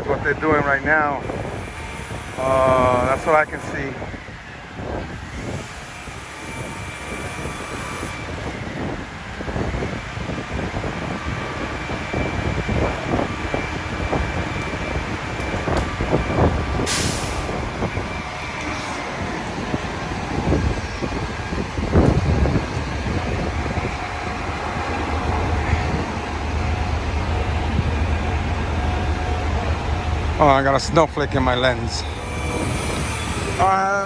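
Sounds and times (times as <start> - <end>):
wind on microphone: 0.0 - 31.0, 31.9 - 34.0
diesel engine whine and rumble: 0.0 - 34.0
air brake hiss: 14.6 - 19.1, 32.0 - 33.7.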